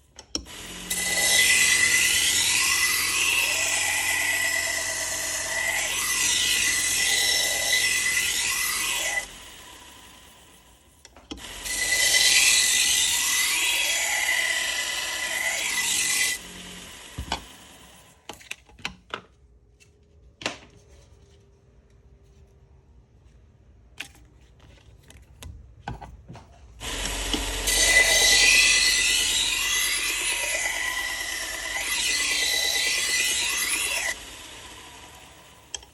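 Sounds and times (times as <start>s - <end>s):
belt sander grinding blade: 0.4s - 18.5s, 26.8s - 35.9s.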